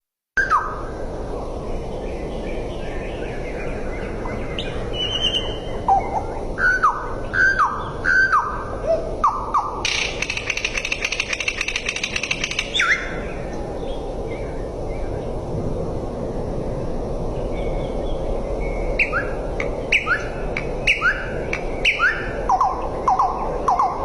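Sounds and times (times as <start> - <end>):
bird calling: 4.2 - 13.6, 19.0 - 24.0.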